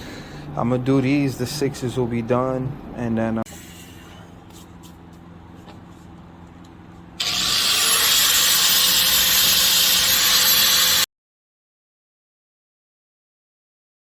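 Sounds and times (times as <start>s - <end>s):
power cutting tool whining: 7.2s - 11.1s.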